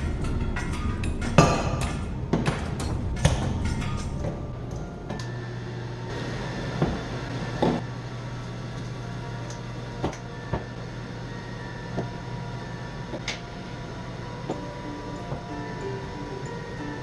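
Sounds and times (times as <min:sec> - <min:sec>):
kitchen appliance humming: 0:00.0 - 0:17.0.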